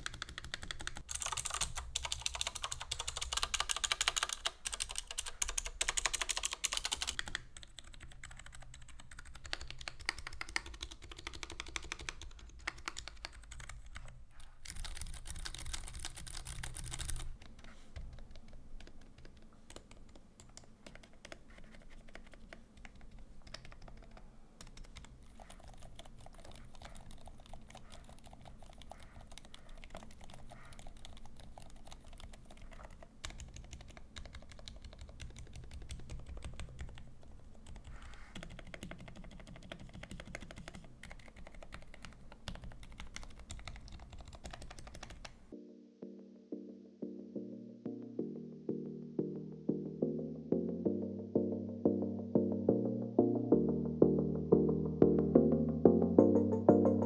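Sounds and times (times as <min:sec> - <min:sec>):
fast typing on mechanical keyboard: 0:00.0 - 0:45.4.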